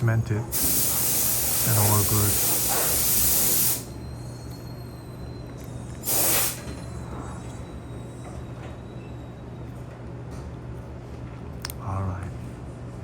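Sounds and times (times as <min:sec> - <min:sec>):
steady low hum: 0:00.0 - 0:13.0
spray jet hissing blast: 0:00.5 - 0:03.9, 0:06.0 - 0:06.6.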